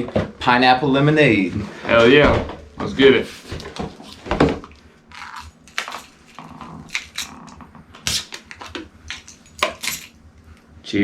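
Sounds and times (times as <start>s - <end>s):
beer cans punched open: 5.1s - 10.2s.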